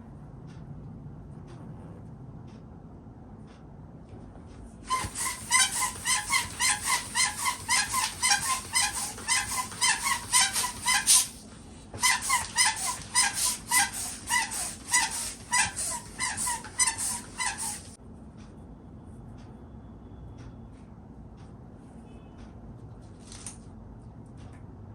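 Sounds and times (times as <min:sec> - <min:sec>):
rubber balloon squeaking: 0:04.9 - 0:11.4, 0:12.0 - 0:18.0.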